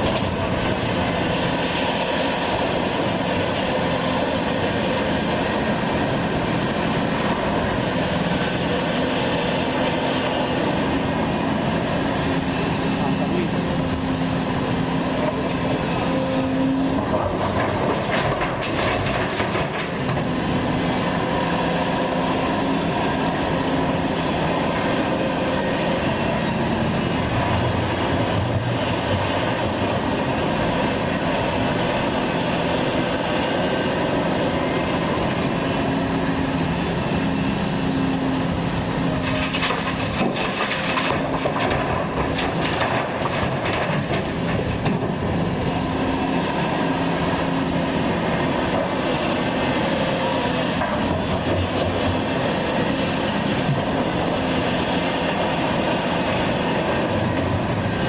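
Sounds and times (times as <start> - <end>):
diesel engine droning: 0.0 - 58.0.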